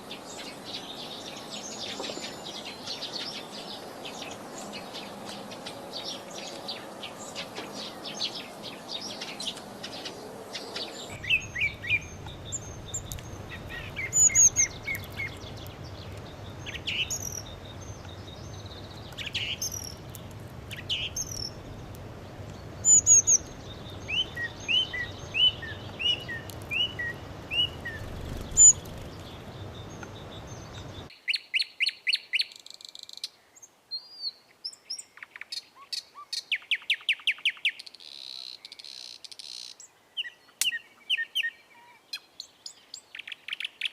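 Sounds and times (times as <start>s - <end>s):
background hiss: 0.0s - 31.3s
sparrows chirping: 0.0s - 32.4s.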